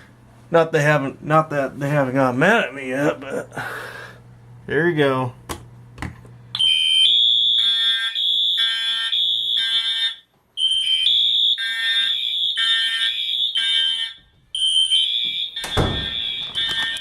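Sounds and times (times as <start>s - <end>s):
fire alarm horns pulsing: 6.6s - 17.0s.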